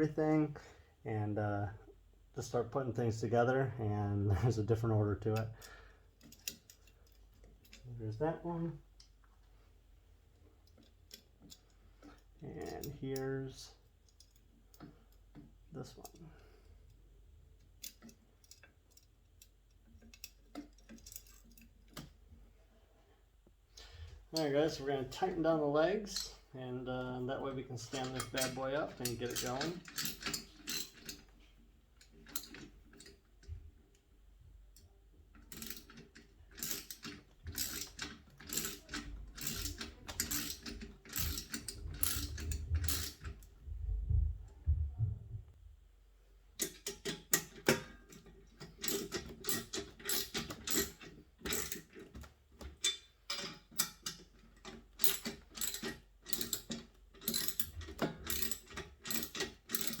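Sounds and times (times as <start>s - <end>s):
ratchet wrench clicking: 36.6s - 43.2s, 55.0s - 60.0s
low rumble: 41.8s - 45.7s.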